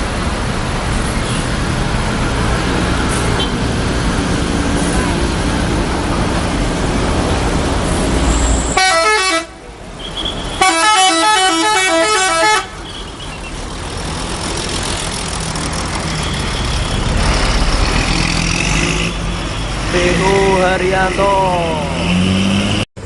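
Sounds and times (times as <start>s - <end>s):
bus engine running: 0.0s - 22.9s
multi-tone bus horn melody: 8.7s - 13.0s.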